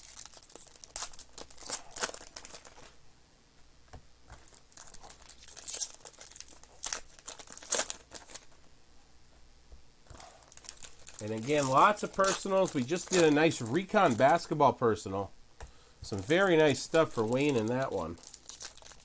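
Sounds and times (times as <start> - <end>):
foil wrappers crinkling and tearing: 0.0 - 3.0, 4.3 - 8.6, 10.1 - 14.6, 16.0 - 19.0.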